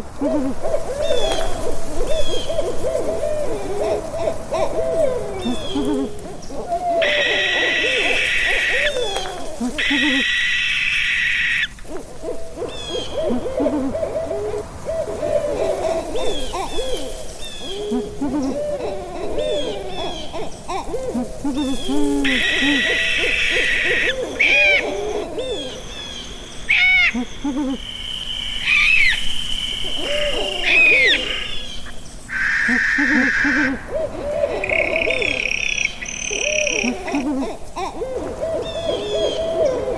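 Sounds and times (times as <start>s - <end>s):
owls hooting: 0.0s - 39.9s
owl screeches: 6.9s - 11.9s, 21.1s - 25.8s, 26.7s - 27.3s, 28.6s - 37.2s.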